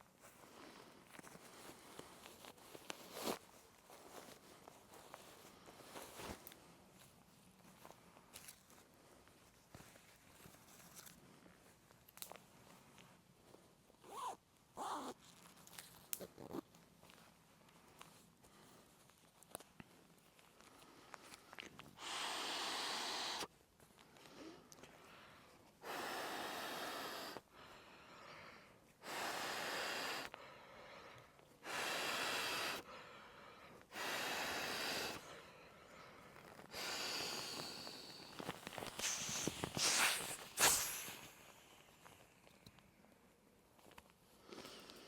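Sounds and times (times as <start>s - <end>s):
blowing into air mattress: 22.0s - 23.5s, 25.8s - 27.4s, 29.0s - 30.3s, 31.6s - 32.8s, 33.9s - 35.3s, 36.7s - 41.8s.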